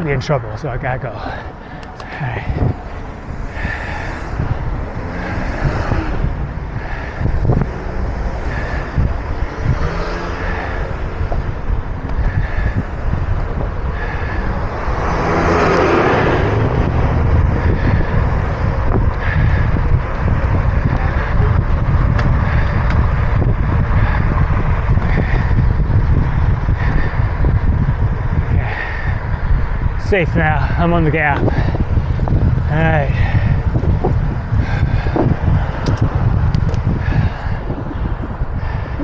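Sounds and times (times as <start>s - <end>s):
road traffic: 0.0s - 39.0s
wind buffeting microphone: 0.0s - 39.0s
vehicle passing close by: 1.3s - 30.0s.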